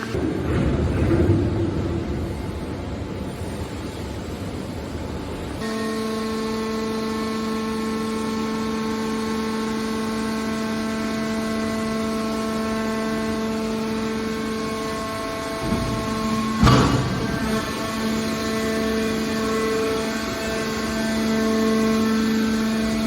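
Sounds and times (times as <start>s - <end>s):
steady hydraulic pump hum: 0.0s - 23.0s
hydraulic baler running: 5.6s - 23.0s.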